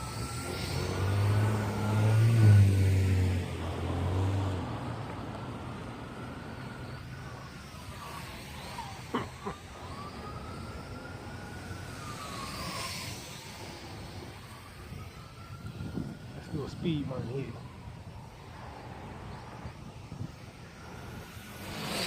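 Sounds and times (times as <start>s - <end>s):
drone motors whining: 0.0s - 22.0s
wind buffeting microphone: 13.4s - 22.0s.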